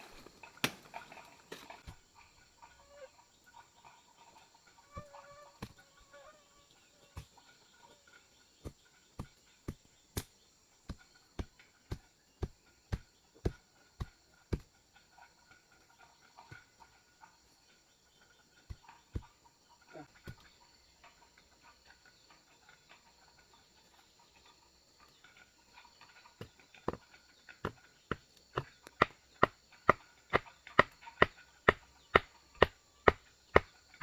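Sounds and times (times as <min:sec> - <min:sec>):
faint bird calls: 0:02.4 - 0:09.8.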